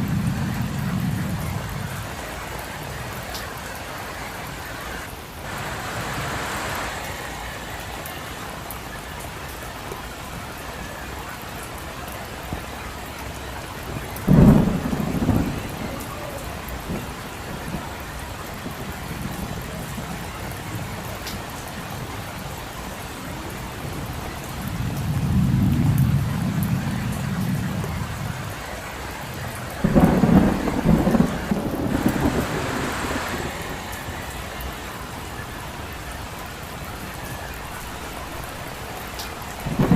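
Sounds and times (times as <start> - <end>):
thunderclaps rolling into rumbling: 0.0 - 3.3, 13.8 - 21.5, 24.1 - 28.7, 29.3 - 34.3, 38.9 - 39.9
steady rain falling: 0.0 - 39.9.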